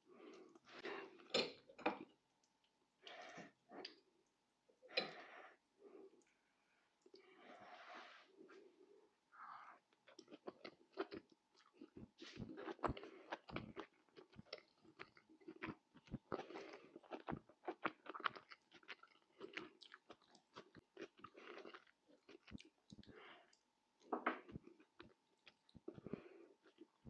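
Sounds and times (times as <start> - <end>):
chewing and biting food: 10.0 - 23.6, 24.4 - 27.0.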